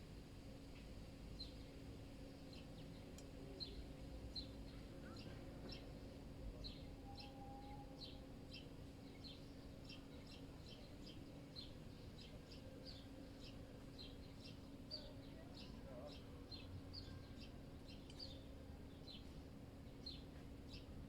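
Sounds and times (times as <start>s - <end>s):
faint low city hum: 0.0s - 21.0s.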